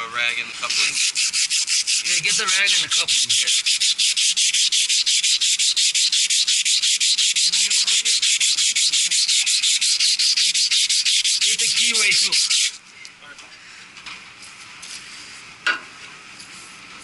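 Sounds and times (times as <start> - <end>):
sandpaper rubbing on metal: 0.6 - 12.8.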